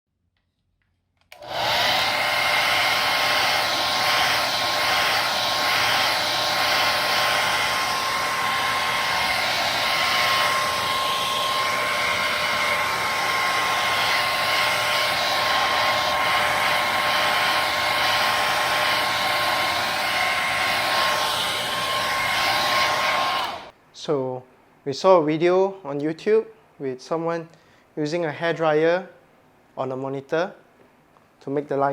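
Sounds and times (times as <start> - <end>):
hair dryer running: 1.3 - 23.8.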